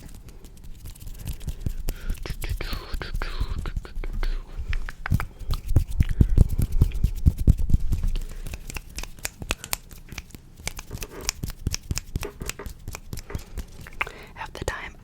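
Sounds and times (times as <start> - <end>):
rapid tapping and scratching: 0.0 - 14.1
heavy low thuds: 3.2 - 8.2.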